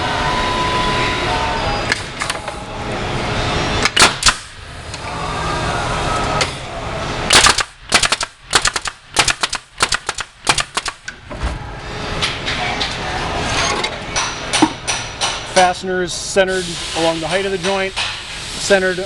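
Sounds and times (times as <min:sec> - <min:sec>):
machine mechanical hum: 0:00.0 - 0:19.0
machine driving fasteners: 0:07.3 - 0:11.1
sharp clicks: 0:07.3 - 0:11.1.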